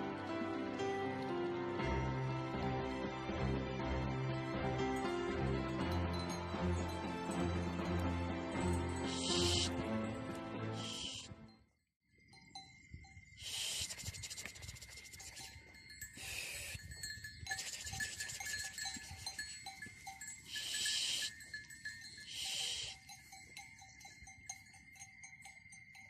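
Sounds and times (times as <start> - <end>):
livestock bells tinkling: 0.0 - 26.0
steady high tone: 9.0 - 9.8.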